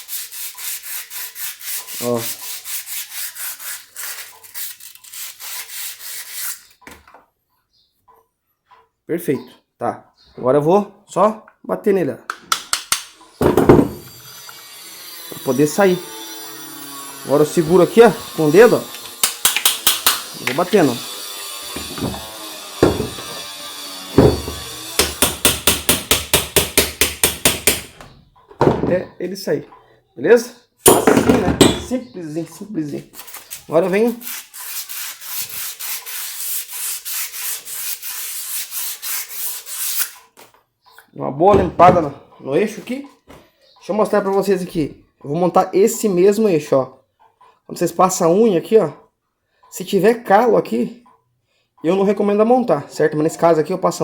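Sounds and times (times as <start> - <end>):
sandpaper rasping on metal shaft: 0.0 - 6.8, 14.2 - 26.7, 32.9 - 40.3
sharp metallic taps: 19.2 - 20.6, 24.3 - 28.0.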